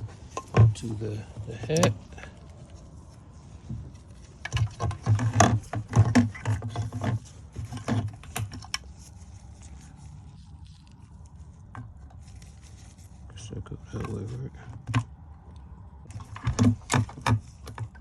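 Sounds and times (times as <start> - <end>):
low steady hum: 0.0 - 18.0.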